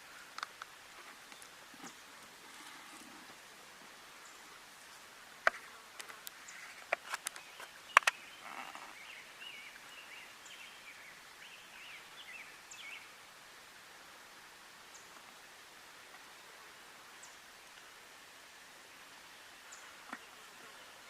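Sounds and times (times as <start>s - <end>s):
small birds chirping: 0.0s - 3.1s, 5.5s - 13.2s, 19.2s - 21.0s
sharp clicks: 6.9s - 8.2s.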